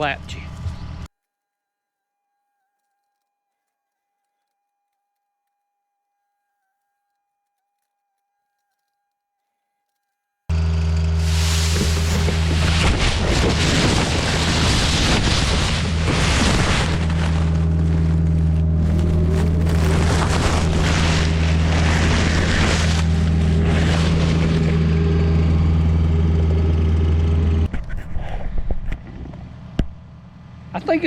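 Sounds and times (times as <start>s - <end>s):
excavator diesel engine: 10.5s - 27.7s
brush scraping and crunching: 10.6s - 25.7s.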